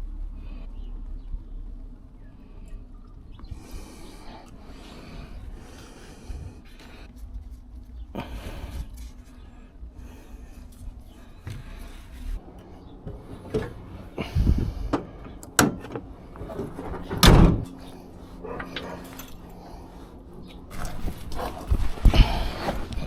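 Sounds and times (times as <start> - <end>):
faint steady hum: 0.0 - 23.0
irregular knocks and clunks: 13.0 - 17.8.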